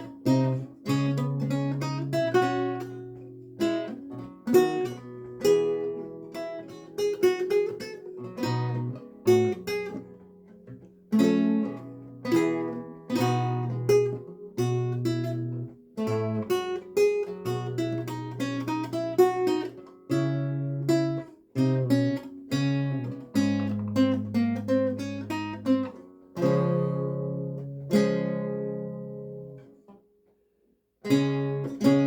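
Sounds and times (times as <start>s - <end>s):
lute plucked notes and chords: 0.0s - 30.0s, 31.0s - 32.0s.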